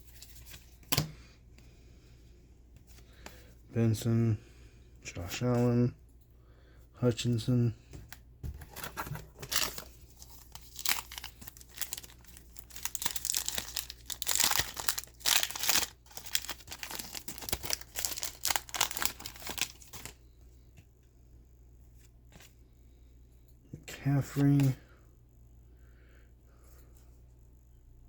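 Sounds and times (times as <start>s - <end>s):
wrapper crinkling and tearing: 8.8s - 20.2s.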